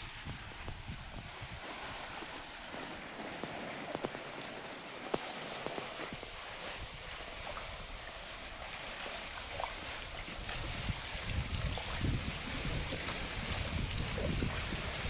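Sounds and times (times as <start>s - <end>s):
wind buffeting microphone: 0.0s - 8.7s, 9.4s - 15.0s.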